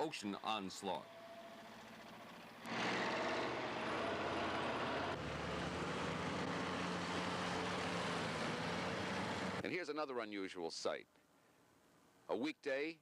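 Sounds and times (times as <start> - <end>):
military convoy engines droning: 0.0 - 9.6
loud rushing noise: 2.7 - 5.2.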